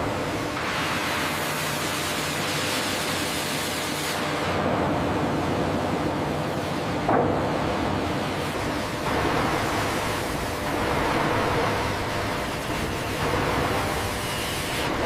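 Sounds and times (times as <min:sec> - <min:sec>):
faint machine hum: 0:00.0 - 0:15.0
machine hiss: 0:08.4 - 0:15.0.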